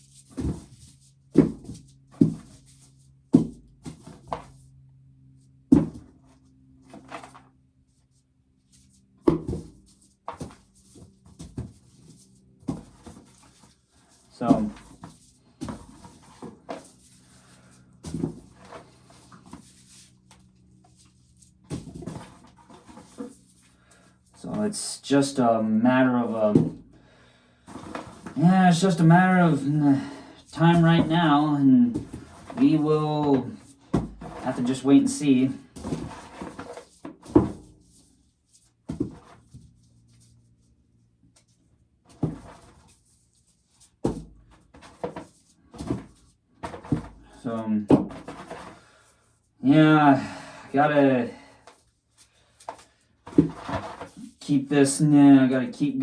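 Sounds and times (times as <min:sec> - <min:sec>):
corn kernels rustling and knocking: 0:00.0 - 0:02.8, 0:09.3 - 0:20.3, 0:20.9 - 0:24.8, 0:26.3 - 0:26.8, 0:27.7 - 0:37.9, 0:44.0 - 0:49.0, 0:52.4 - 0:54.3.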